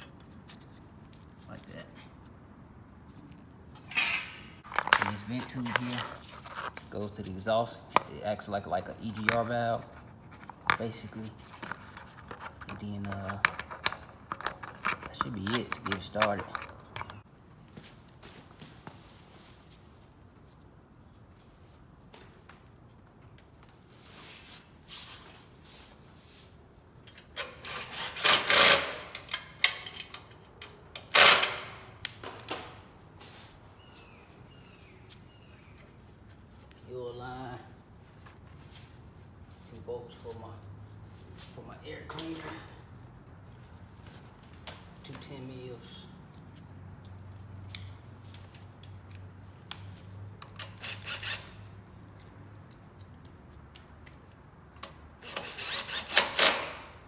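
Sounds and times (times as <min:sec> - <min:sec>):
parts and tools clattering: 0:03.8 - 0:07.2, 0:08.9 - 0:17.2, 0:27.2 - 0:32.9.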